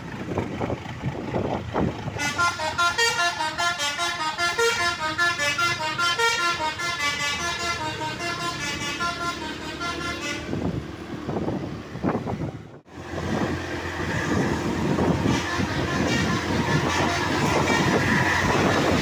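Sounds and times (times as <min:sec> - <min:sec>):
bus running noise: 0:00.0 - 0:19.0
bus musical horn tune: 0:02.1 - 0:10.8, 0:13.9 - 0:19.0.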